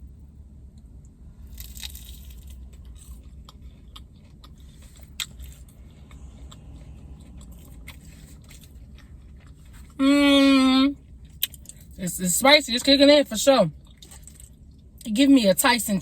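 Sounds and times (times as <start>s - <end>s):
low hum: 0.0s - 15.1s
person chewing crunchy food: 1.4s - 10.0s, 13.7s - 14.8s.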